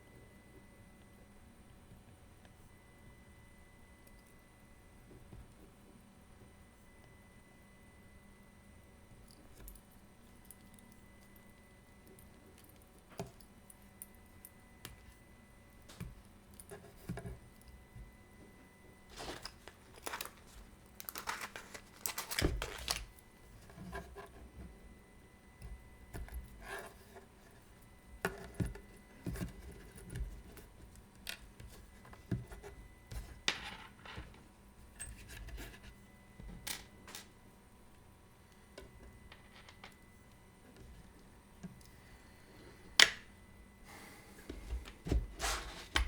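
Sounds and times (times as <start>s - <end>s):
scraping and rustling: 19.1s - 24.4s, 44.8s - 46.0s.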